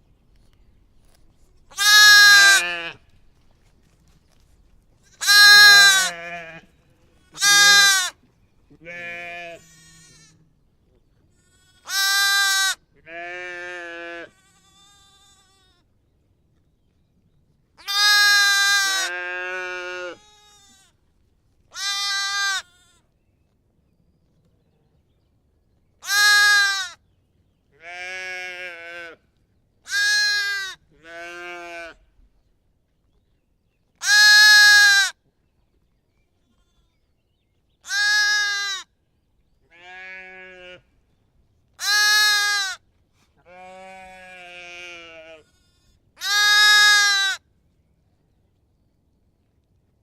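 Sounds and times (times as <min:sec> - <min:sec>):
lamb bleating: 0:01.7 - 0:03.0, 0:05.2 - 0:08.2, 0:08.8 - 0:10.4, 0:11.4 - 0:15.8, 0:17.8 - 0:21.0, 0:21.7 - 0:23.0, 0:26.0 - 0:27.0, 0:27.8 - 0:29.2, 0:29.9 - 0:32.0, 0:34.0 - 0:35.1, 0:37.8 - 0:38.9, 0:39.7 - 0:40.9, 0:41.8 - 0:42.8, 0:43.4 - 0:47.4.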